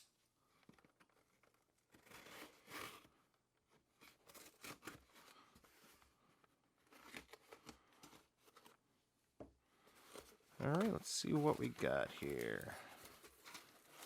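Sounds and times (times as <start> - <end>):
shipping bag tearing and crinkling: 10.1 - 14.0.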